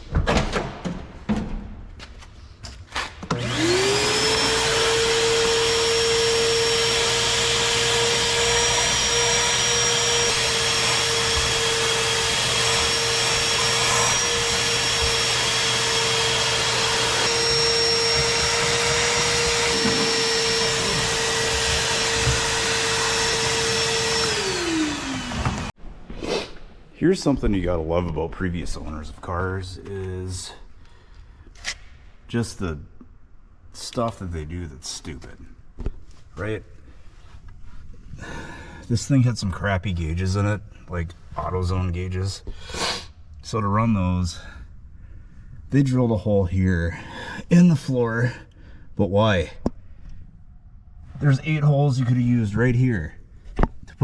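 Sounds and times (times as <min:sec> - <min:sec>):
vacuum cleaner whine: 0:03.3 - 0:25.8.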